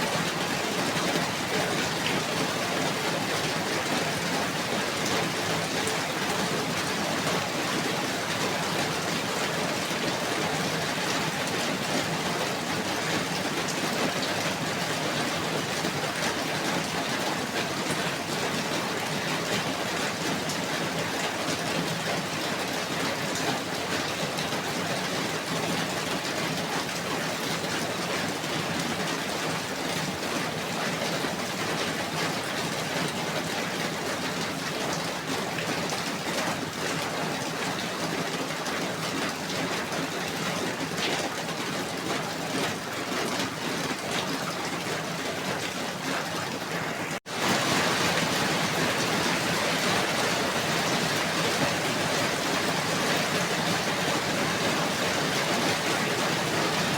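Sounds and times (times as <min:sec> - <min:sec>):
steady rain hiss: 0:46.6 - 0:56.9.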